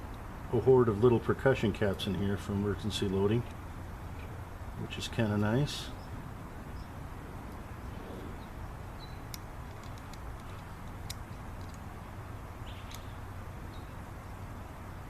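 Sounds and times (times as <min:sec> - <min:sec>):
low background rumble: 0:00.0 - 0:15.0
small metal tool clicks: 0:09.3 - 0:11.8, 0:12.8 - 0:13.2.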